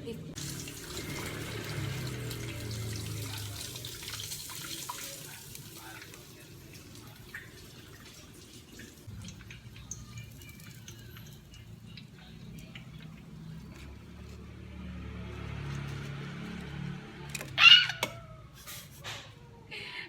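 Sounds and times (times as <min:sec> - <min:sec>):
food sizzling in hot oil: 0:00.4 - 0:11.6.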